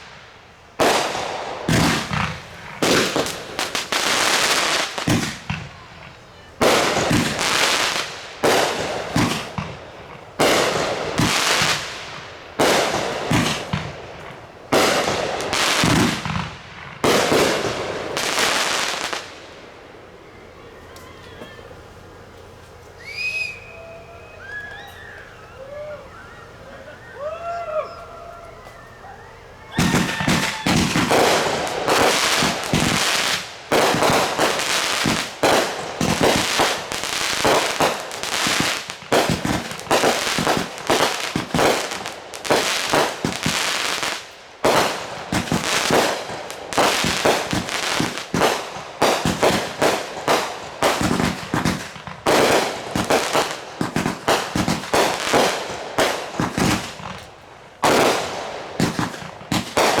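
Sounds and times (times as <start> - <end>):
fireworks banging and crackling: 0.0 - 23.8, 28.5 - 60.0.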